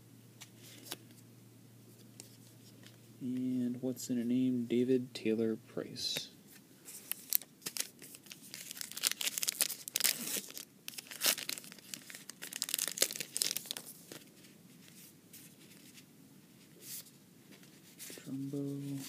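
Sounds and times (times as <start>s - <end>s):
wrapper tearing and crinkling: 7.0s - 14.3s.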